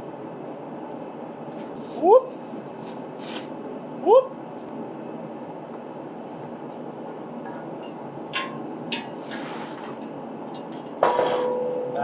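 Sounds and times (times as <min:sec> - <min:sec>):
garage heater running: 0:00.0 - 0:12.0
sharp metal knocks: 0:11.0 - 0:12.0.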